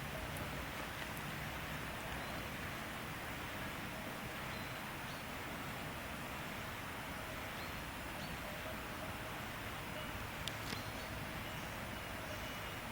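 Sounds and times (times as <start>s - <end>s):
hiss of air and leaves: 0.0s - 12.9s
faint bird chirps: 2.0s - 2.6s, 4.4s - 5.4s, 7.3s - 9.2s, 9.9s - 12.9s.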